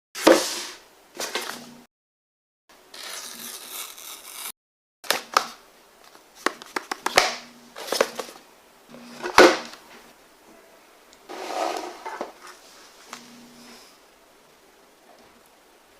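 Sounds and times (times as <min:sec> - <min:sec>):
quick taps and clicks: 0:06.4 - 0:07.3
packaging scraping slide: 0:11.3 - 0:12.2.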